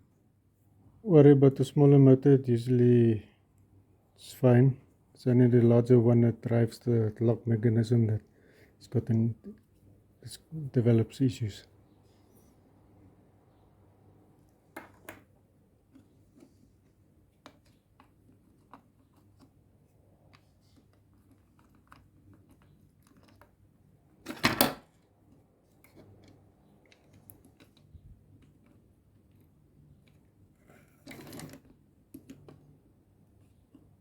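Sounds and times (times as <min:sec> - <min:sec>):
faint clicks and taps of small parts: 0:15.9 - 0:19.6, 0:25.3 - 0:34.0.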